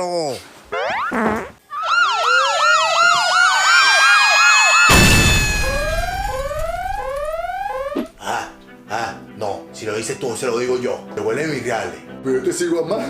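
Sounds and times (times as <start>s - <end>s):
siren-like warble: 1.8s - 8.2s
rising chirps: 4.9s - 8.4s.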